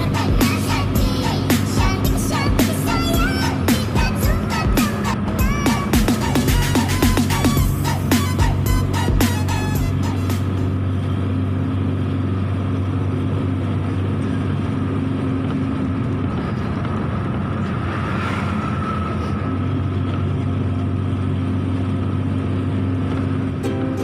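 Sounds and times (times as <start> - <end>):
truck engine running: 0.0 - 24.0
tyre and road noise: 0.0 - 24.0.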